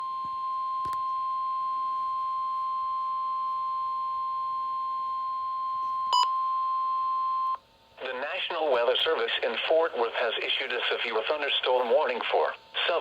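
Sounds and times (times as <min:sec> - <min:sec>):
steady alarm beep: 0:00.6 - 0:07.6.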